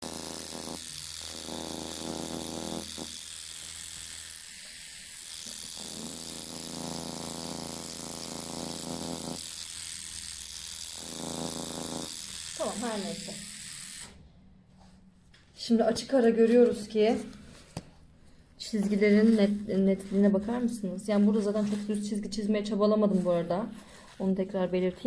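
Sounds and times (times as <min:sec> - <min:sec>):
tattoo machine buzzing: 0:00.0 - 0:14.2.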